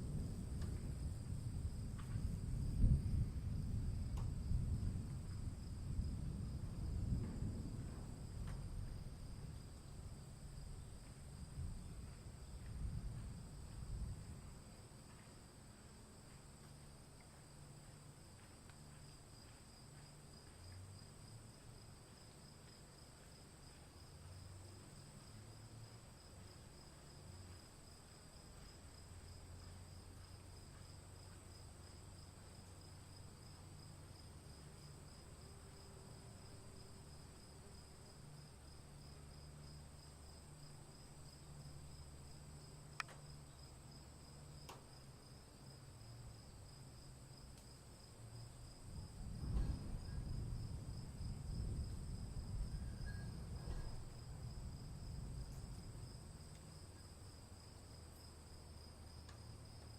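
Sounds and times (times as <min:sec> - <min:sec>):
low uneven rumble: 0:00.0 - 0:22.4, 0:48.2 - 0:57.5
insects chirping: 0:00.0 - 0:59.9.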